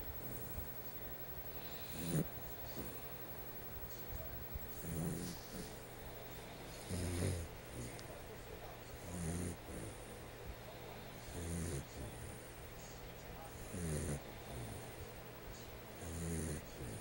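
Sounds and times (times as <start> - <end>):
dog snoring: 1.6 - 3.0, 4.7 - 5.9, 6.6 - 8.0, 9.0 - 10.1, 11.1 - 12.5, 13.4 - 15.1, 16.0 - 17.0.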